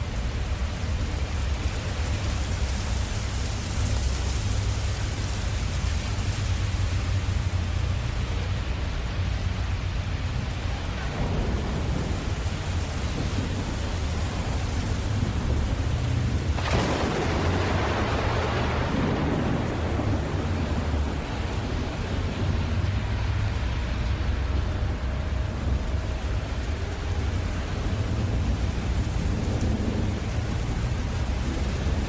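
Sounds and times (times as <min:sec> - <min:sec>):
steady rain: 0:00.0 - 0:32.0
low thunder rumble: 0:05.0 - 0:32.0
sharp thunderclap: 0:11.0 - 0:23.1.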